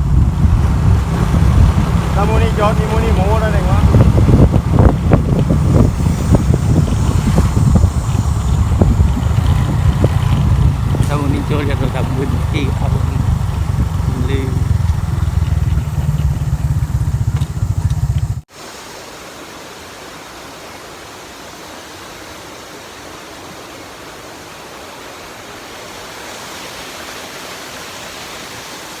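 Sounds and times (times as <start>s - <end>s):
waterfall rushing: 0.0s - 16.6s, 18.5s - 29.0s
loud low rumble: 0.0s - 18.4s.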